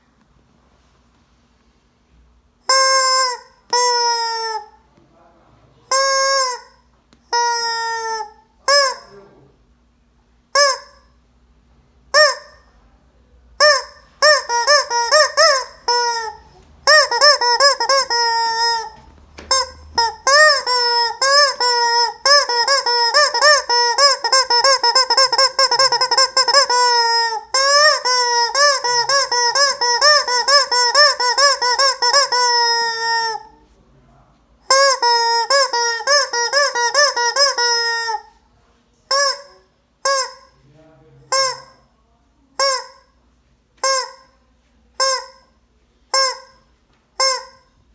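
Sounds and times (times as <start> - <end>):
squeaky rubber chicken toy: 2.6 - 4.8, 5.9 - 9.3, 10.5 - 11.2, 12.1 - 12.8, 13.6 - 33.6, 34.6 - 38.4, 39.1 - 40.6, 41.3 - 41.9, 42.6 - 43.2, 43.8 - 44.4, 45.0 - 47.9.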